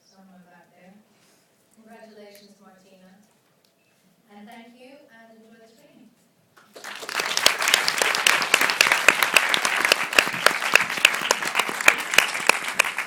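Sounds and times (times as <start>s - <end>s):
audience applauding: 6.6s - 13.0s.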